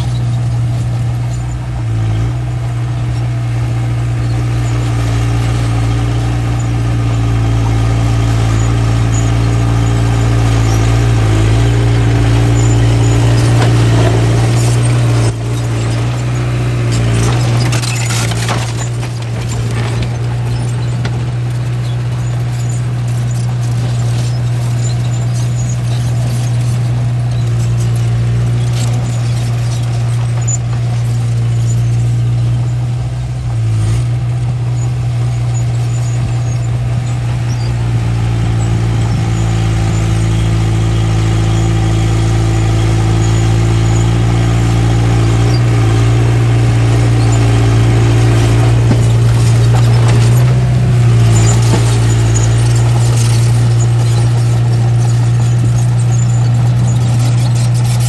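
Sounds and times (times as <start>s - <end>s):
bulldozer diesel engine under load: 0.0s - 58.0s.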